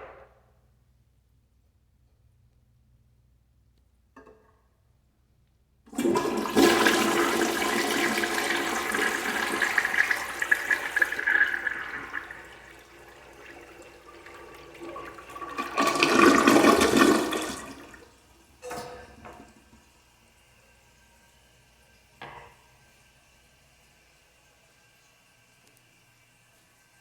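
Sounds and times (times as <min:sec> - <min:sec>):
toilet flushing: 0:05.9 - 0:27.0.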